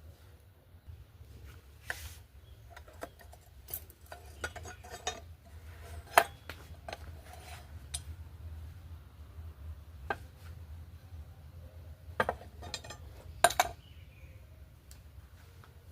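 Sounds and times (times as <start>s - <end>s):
steady low hum: 0.0s - 15.9s
metal tools clinking: 2.7s - 8.2s, 12.2s - 13.8s.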